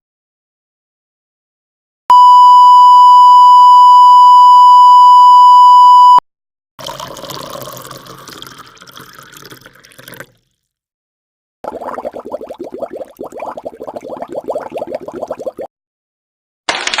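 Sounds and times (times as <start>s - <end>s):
loud steady censor beep: 2.1s - 6.2s.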